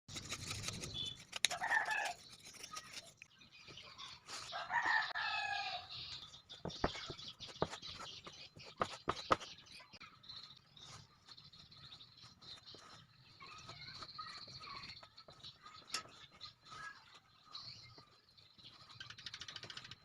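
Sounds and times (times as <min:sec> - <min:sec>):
rooster crowing: 0:04.6 - 0:05.9.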